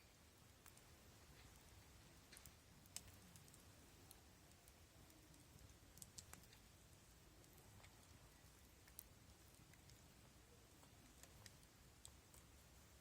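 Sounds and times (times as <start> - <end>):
wood fire crackling and popping: 0.6 - 4.6.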